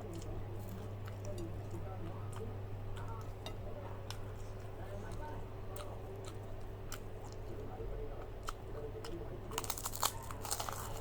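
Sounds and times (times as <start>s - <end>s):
chewing: 0.0s - 11.0s
loud crunches: 9.6s - 11.0s.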